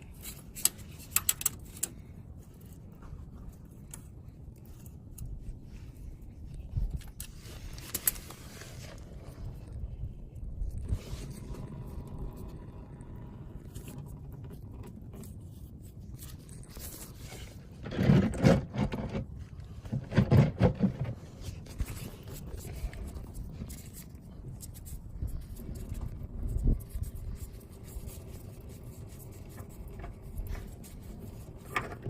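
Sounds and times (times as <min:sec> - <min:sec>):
oil filter wrench scraping: 0:00.0 - 0:05.4, 0:13.6 - 0:32.0.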